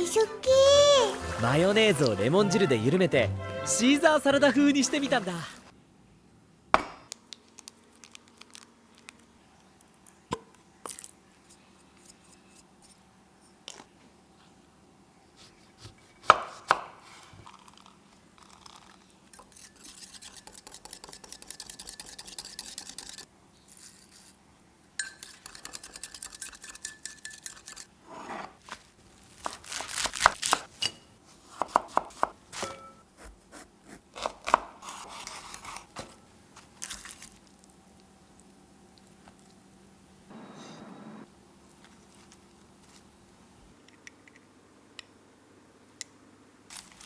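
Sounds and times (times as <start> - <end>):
utensils scraping bowls: 19.4 - 23.2
utensils clinking on dishes: 25.0 - 27.9, 32.6 - 33.0.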